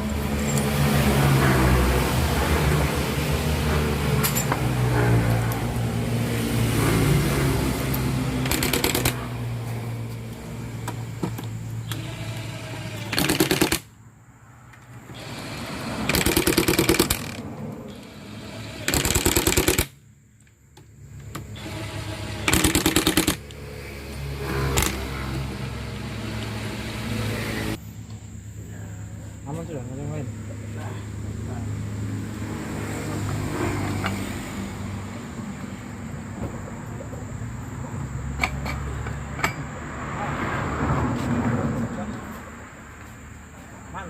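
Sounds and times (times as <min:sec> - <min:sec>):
engine-like hum: 0:00.0 - 0:44.0
impact wrench rattling: 0:08.4 - 0:09.2, 0:13.0 - 0:13.8, 0:16.0 - 0:17.4, 0:18.8 - 0:19.9, 0:22.4 - 0:23.4.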